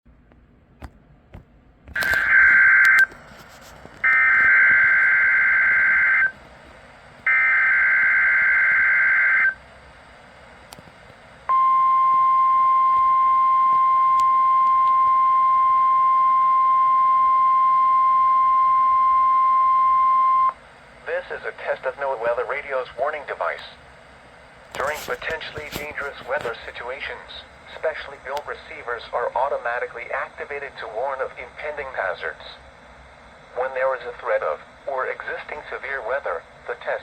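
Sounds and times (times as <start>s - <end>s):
steady warning alarm tone: 2.0s - 3.2s, 4.0s - 6.4s, 7.2s - 9.6s, 11.5s - 20.6s.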